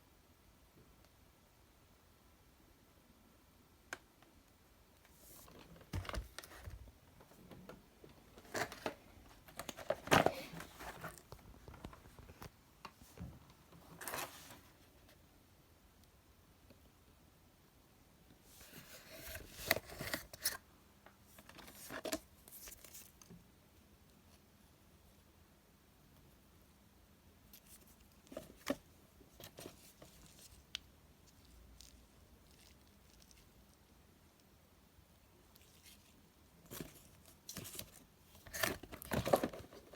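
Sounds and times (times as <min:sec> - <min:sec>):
soft handling clicks and rustles: 0:05.0 - 0:15.2, 0:35.5 - 0:39.9
boxes and wrapping crinkling: 0:08.3 - 0:12.5, 0:35.6 - 0:39.9.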